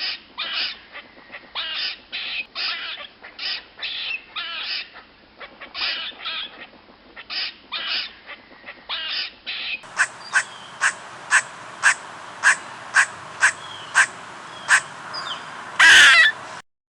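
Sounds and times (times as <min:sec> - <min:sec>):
squirrel chattering alarm calls: 0:09.8 - 0:16.6
squirrel short sharp barks: 0:10.0 - 0:14.9.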